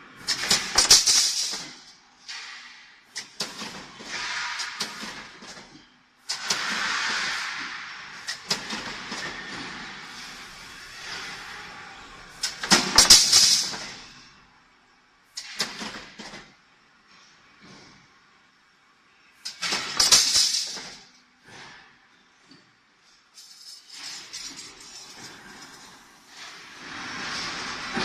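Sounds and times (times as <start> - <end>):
metallic clatter of punching machine: 0.2 - 9.8, 12.4 - 14.1, 15.4 - 16.5, 19.4 - 21.7.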